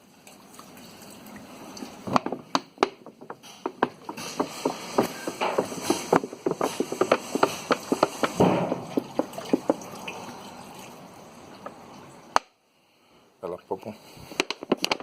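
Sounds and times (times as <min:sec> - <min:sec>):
fuel glugging and splashing: 0:00.6 - 0:12.4.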